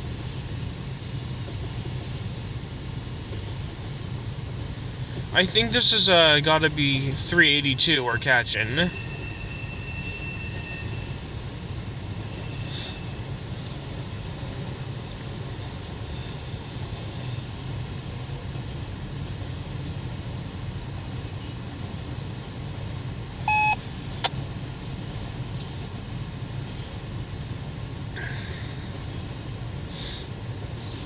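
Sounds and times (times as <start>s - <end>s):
freight train rumbling past: 0.0s - 21.2s
short loud beep: 23.5s - 23.8s.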